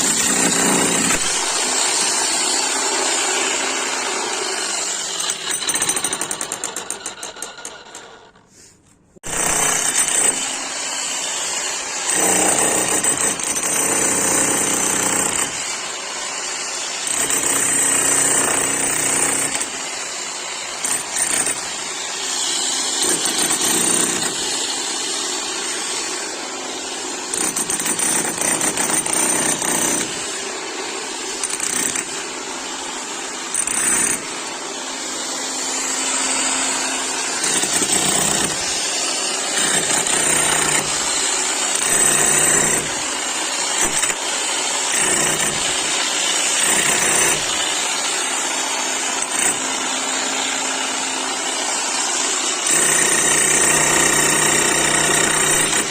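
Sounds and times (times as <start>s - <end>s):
demolition hammer hammering: 0.0s - 1.6s, 37.4s - 38.9s, 39.6s - 43.2s.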